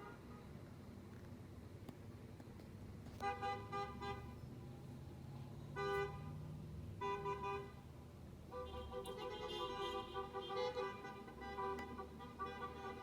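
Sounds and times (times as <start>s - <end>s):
car engines rumbling: 0.0s - 13.0s
car horns honking: 3.2s - 4.3s, 5.8s - 6.3s, 7.0s - 7.8s, 8.5s - 13.0s.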